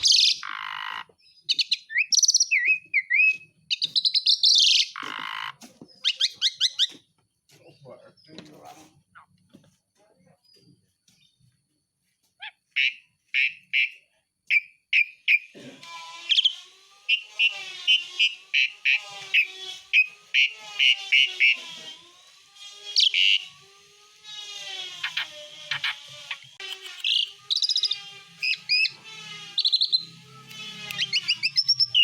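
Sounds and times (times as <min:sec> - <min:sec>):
starling whistled song: 0:01.3 - 0:05.0, 0:12.8 - 0:15.5, 0:16.2 - 0:21.6, 0:23.0 - 0:23.5, 0:25.0 - 0:32.0.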